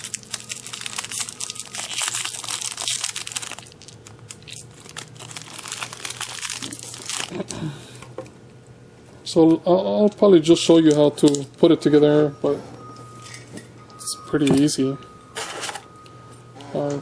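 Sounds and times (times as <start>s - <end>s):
plastic packaging crinkling: 0.0s - 7.6s, 10.0s - 11.6s.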